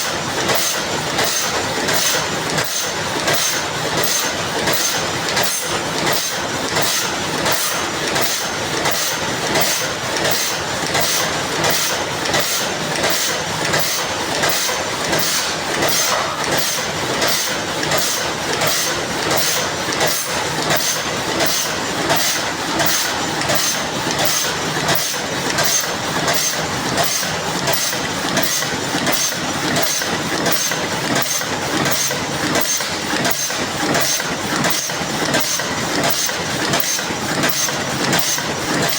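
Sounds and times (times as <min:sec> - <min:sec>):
machine clattering rhythmically: 0:00.0 - 0:38.9.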